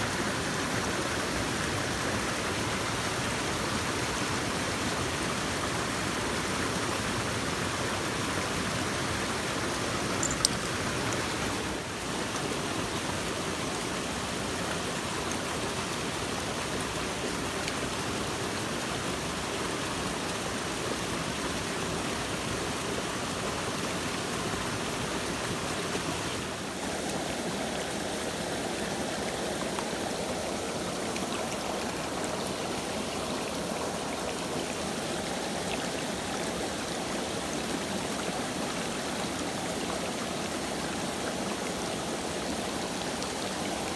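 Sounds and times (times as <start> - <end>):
stream rushing over rocks: 0.0 - 43.9
sharp click: 10.2 - 11.2.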